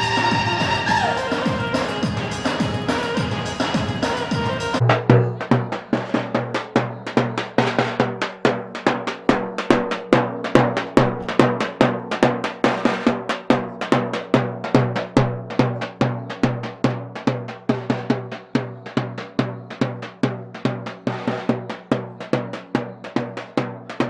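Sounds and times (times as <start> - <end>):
drums beating dance rhythm: 0.0 - 24.0
deep ringing drum stroke: 4.8 - 7.3.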